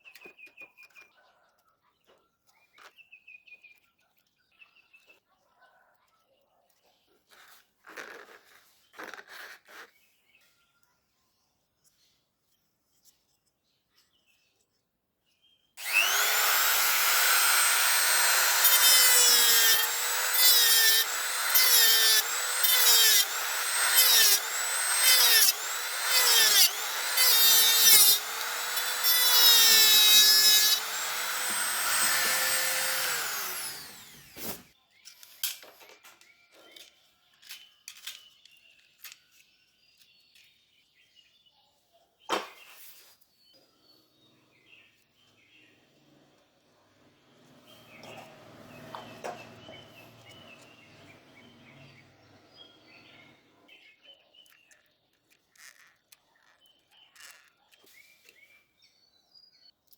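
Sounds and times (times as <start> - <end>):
power tool motor whine: 15.8 - 34.7.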